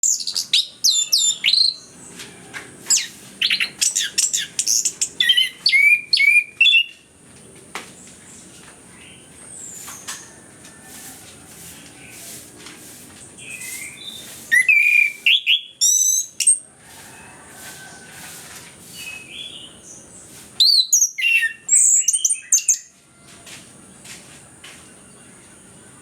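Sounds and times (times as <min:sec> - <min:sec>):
thrush singing whistled phrases: 0:02.9 - 0:06.9, 0:13.6 - 0:16.4.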